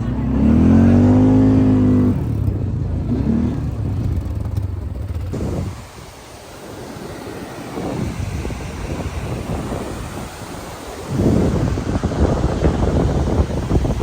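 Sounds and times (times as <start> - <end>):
quad bike engine revving: 0.0 - 5.9.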